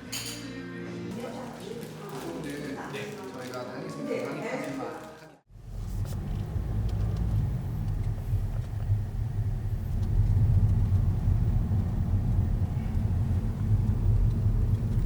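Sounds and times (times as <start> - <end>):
car road and engine rumble: 5.5 - 15.0.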